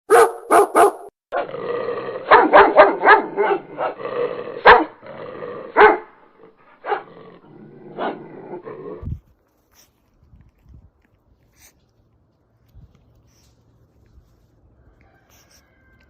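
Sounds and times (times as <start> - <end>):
dog barking: 0.1 - 1.5, 2.2 - 4.0, 4.6 - 5.0, 5.7 - 7.1, 7.9 - 8.3
dog growling: 1.3 - 9.1.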